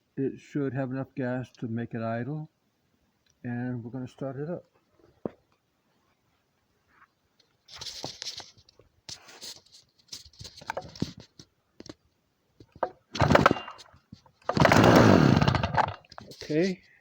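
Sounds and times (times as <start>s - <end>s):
chainsaw engine firing and dying: 12.8s - 16.1s
recoil starter rope pulls: 12.8s - 16.7s.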